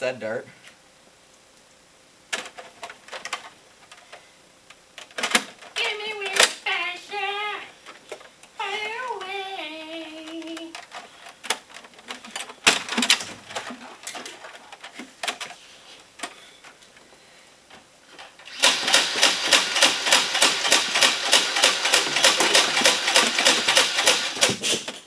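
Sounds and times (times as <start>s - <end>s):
scattered knocks and clicks: 2.3s - 4.0s, 5.0s - 6.6s, 18.2s - 25.0s
toy blaster firing rapidly: 18.5s - 24.6s.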